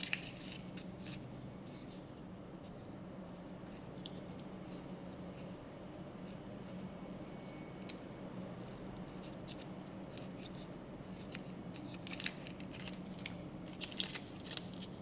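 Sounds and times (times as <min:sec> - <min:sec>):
packaging crinkling: 0:00.0 - 0:01.2, 0:11.2 - 0:15.0.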